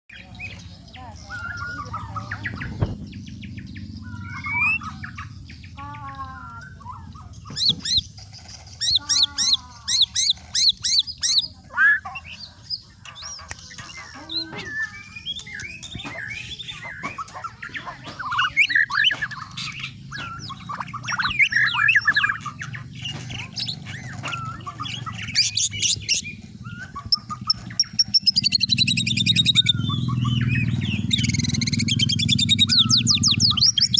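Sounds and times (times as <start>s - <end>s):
bird singing whistles: 4.0s - 5.1s, 13.5s - 17.3s, 18.2s - 22.4s, 23.6s - 33.9s.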